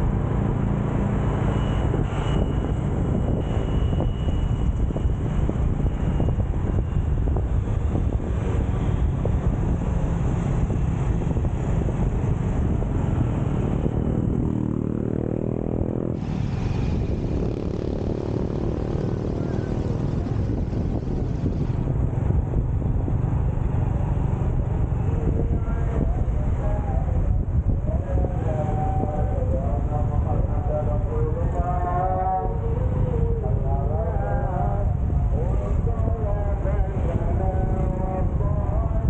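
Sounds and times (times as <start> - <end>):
motorcycle engine running: 0.0 - 25.8
wind rumbling on microphone: 0.0 - 39.0.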